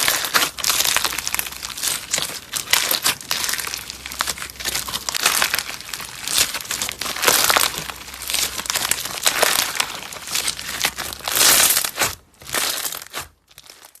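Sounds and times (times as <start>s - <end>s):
slime squeezed crackling: 0.0s - 14.0s.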